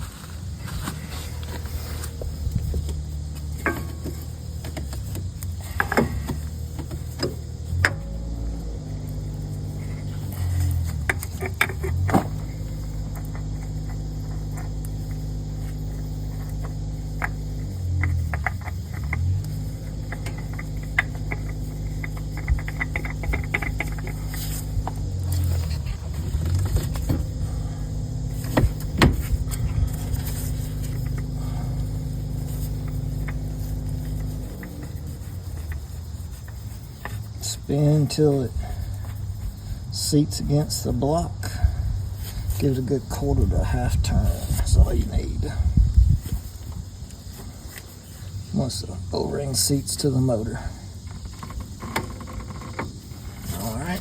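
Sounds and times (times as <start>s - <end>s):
low machine hum: 0.0s - 51.2s
small metal parts clicking: 9.0s - 37.5s.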